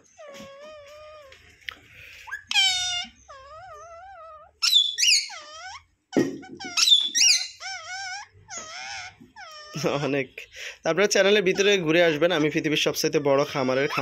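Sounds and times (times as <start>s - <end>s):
parakeet squeaky calls: 2.2s - 10.1s, 11.4s - 14.0s.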